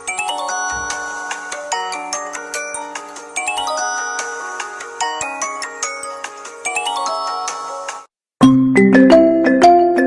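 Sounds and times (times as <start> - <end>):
phone ringtone melody: 0.0 - 7.9.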